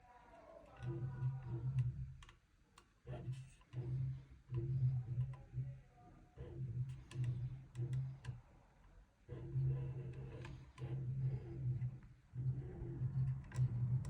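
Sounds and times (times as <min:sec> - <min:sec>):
printer head humming and clicking: 0:06.4 - 0:08.4, 0:09.3 - 0:14.0.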